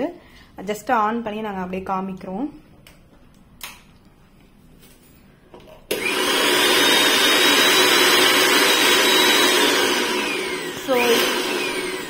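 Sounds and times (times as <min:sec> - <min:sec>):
mixer grinder motor running: 0:05.9 - 0:12.0.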